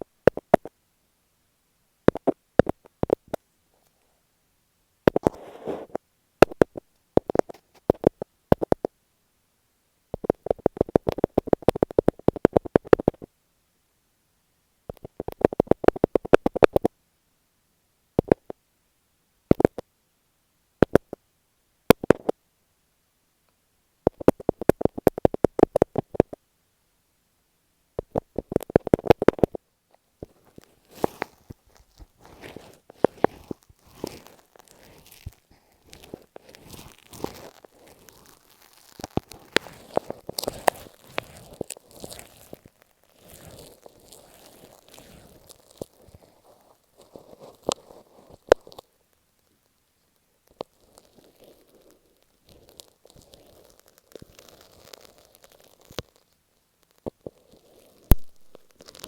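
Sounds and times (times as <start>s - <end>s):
fingertips tapping on tape: 6.4s - 8.9s, 10.2s - 13.3s, 24.1s - 26.4s, 28.0s - 29.6s, 30.2s - 48.8s.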